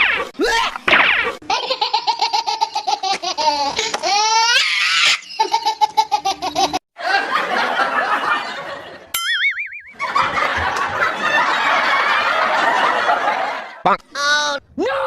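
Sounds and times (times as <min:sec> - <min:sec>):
high-pitched rapid laughter: 0:01.5 - 0:06.8.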